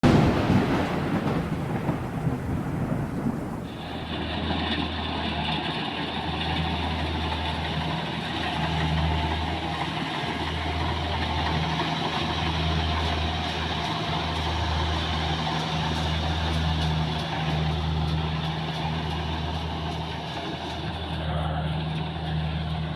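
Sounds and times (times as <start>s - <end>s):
diesel engine running: 0.0s - 22.9s.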